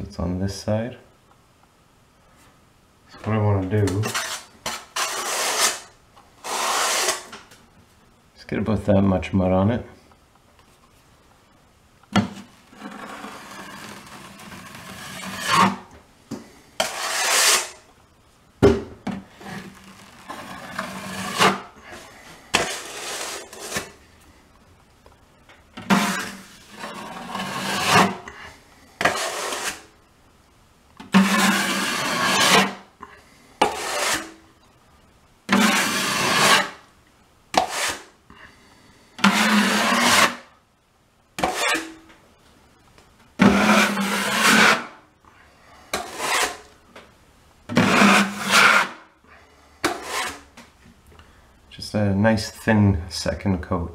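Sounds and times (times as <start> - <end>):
trowel scraping joint compound: 3.7 - 7.4, 12.2 - 15.9, 16.8 - 17.9, 19.4 - 24.0, 25.8 - 29.9, 31.0 - 34.4, 35.5 - 36.8, 37.5 - 38.1, 39.2 - 40.5, 41.4 - 42.0, 43.4 - 45.0, 45.9 - 46.8, 47.7 - 49.1, 49.8 - 50.6.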